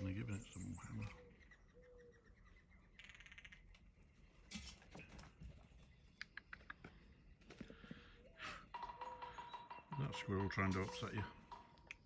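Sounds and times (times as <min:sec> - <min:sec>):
woodpecker drumming on tree: 0:00.9 - 0:04.0, 0:08.2 - 0:12.0.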